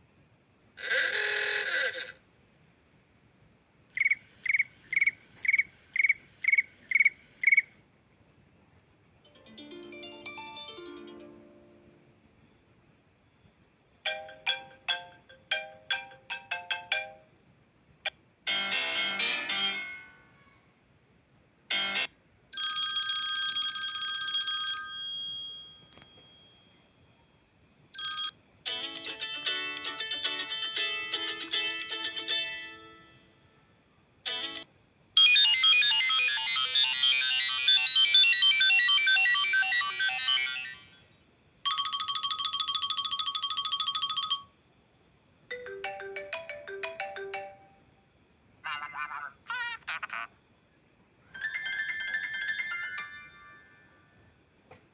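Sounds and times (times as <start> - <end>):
guitar-like ringtone melody: 9.3 - 11.9, 18.5 - 20.2, 21.7 - 22.7, 28.0 - 33.2, 34.3 - 41.0, 45.5 - 47.7, 51.4 - 53.8
beeping pulses: 35.2 - 40.9
warbling chirping electronic tones: 35.2 - 41.1.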